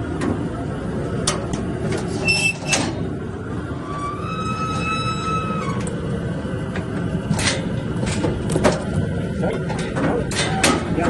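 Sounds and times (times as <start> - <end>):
steel gates clanking: 1.3 - 3.1, 9.6 - 11.0
thin squeal: 2.2 - 2.8, 3.8 - 5.8.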